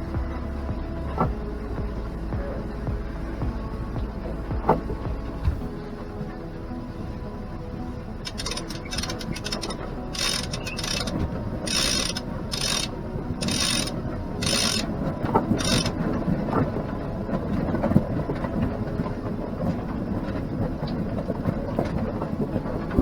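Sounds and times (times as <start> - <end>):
steady low rush: 0.0 - 23.0
winch ratcheting: 8.3 - 16.0.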